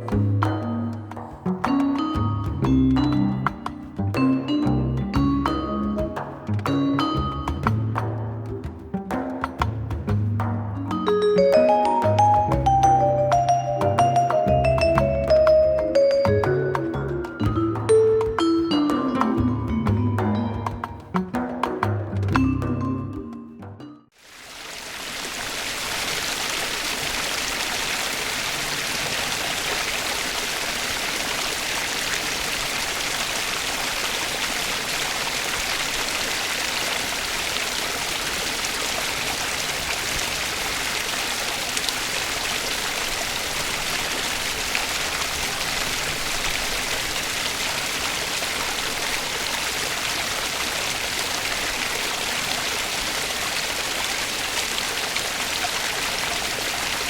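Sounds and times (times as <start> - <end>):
water splashing over rocks: 24.2 - 57.0.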